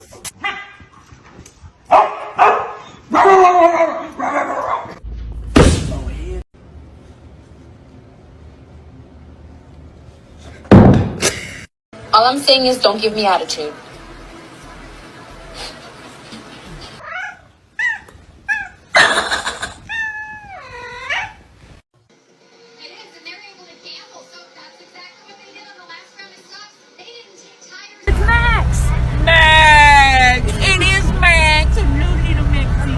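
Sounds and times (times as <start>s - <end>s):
dog barking: 0.4s - 0.9s, 1.9s - 5.0s
cat meowing: 19.8s - 21.4s.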